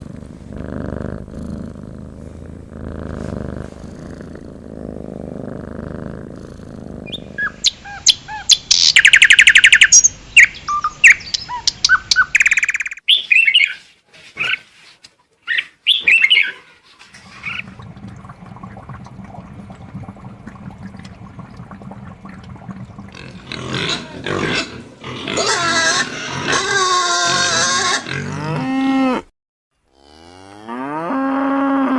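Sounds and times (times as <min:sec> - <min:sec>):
shrill bird chirps and squawks: 0:07.1 - 0:13.8, 0:15.4 - 0:16.7.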